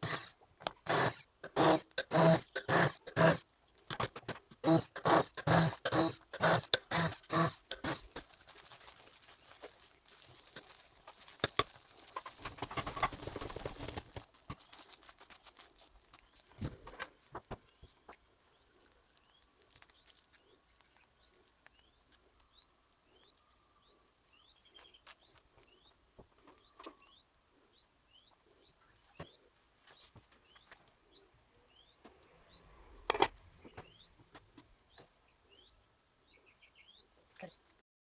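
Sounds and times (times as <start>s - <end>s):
bird chirping: 17.6s - 37.7s.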